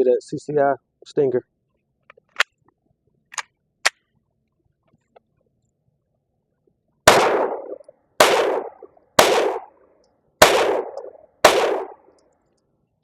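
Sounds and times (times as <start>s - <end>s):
pistol shots with echo: 7.1s - 9.8s, 10.4s - 12.2s.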